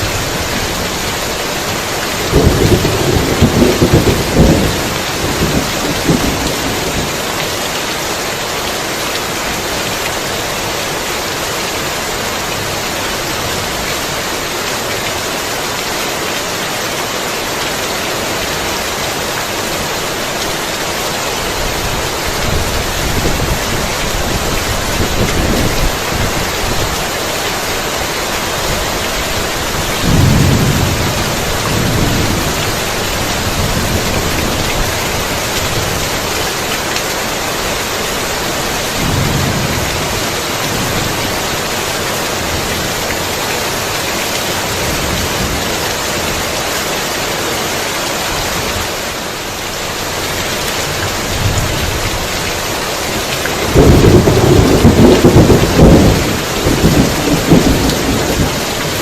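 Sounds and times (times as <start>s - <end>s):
heavy rain: 0.0s - 59.0s
thunder rumbling: 1.8s - 7.4s, 29.4s - 36.2s, 39.0s - 41.6s, 53.6s - 59.0s.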